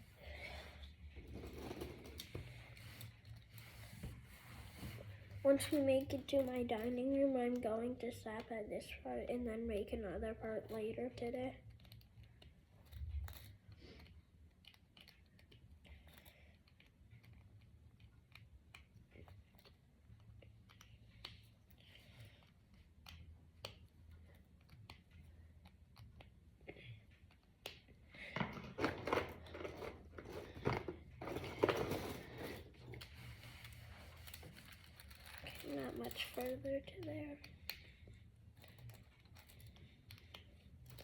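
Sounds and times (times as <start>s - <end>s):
plastic pieces rustling and clattering: 33.6s - 36.6s.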